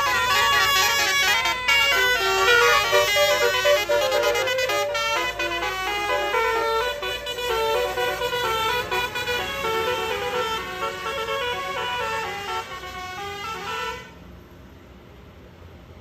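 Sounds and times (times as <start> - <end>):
musical bus air horns: 0.0 - 14.3.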